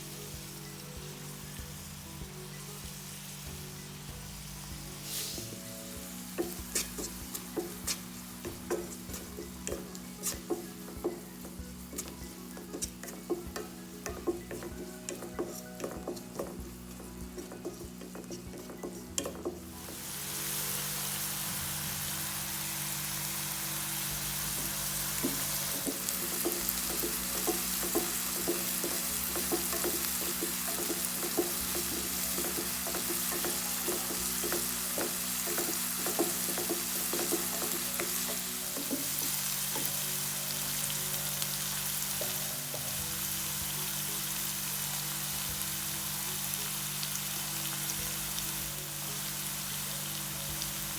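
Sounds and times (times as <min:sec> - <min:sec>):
food sizzling in a pan: 0:00.0 - 0:50.9
spoon scraping a pan: 0:06.4 - 0:19.7.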